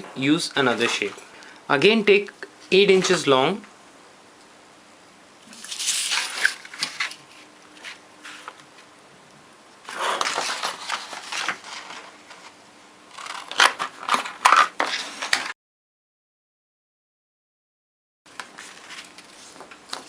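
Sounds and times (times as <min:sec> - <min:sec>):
paper rustling and crinkling: 0:05.5 - 0:08.8, 0:09.9 - 0:12.6, 0:13.2 - 0:15.5, 0:18.3 - 0:20.0.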